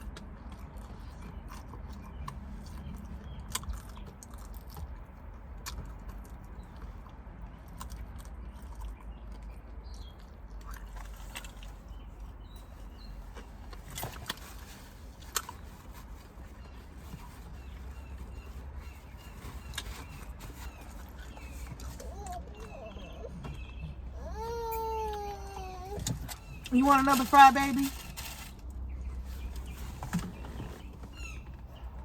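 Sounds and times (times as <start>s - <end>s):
person chewing food: 0.0s - 14.4s.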